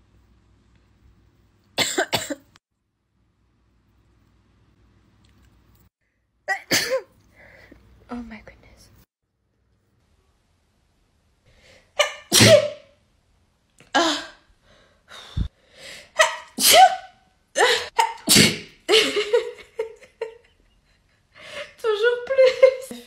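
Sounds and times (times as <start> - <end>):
person sneezing: 12.0 - 12.9, 16.2 - 18.8.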